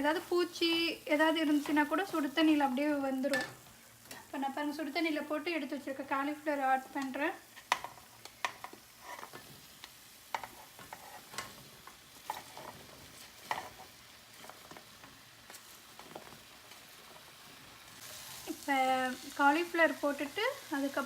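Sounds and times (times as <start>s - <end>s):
faint sizzle: 0.0s - 21.0s
spoon scraping a pan: 7.0s - 17.5s.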